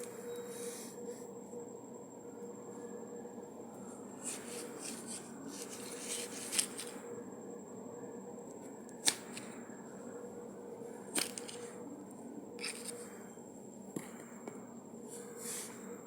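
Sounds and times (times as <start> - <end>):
sharp cracks of clay: 9.0 - 9.5, 11.1 - 11.6.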